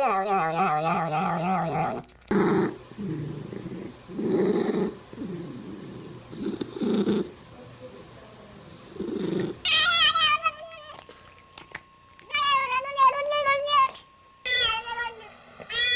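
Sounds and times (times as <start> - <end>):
cat purring: 0.4 - 7.4, 8.6 - 15.9
cat meowing: 9.7 - 11.1, 12.2 - 15.9.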